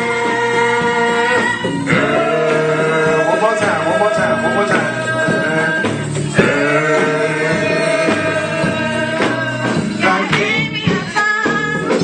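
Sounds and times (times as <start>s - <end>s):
gospel band playing: 0.0s - 12.0s.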